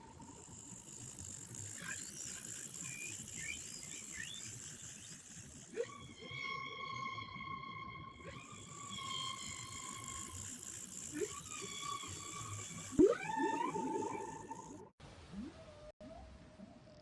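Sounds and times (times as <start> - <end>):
whale song calls: 8.4 - 16.8.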